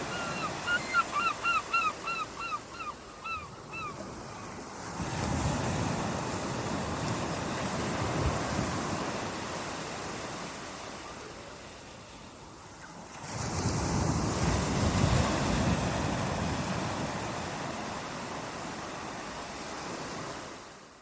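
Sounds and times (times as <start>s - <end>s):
sea surf: 0.0s - 21.0s.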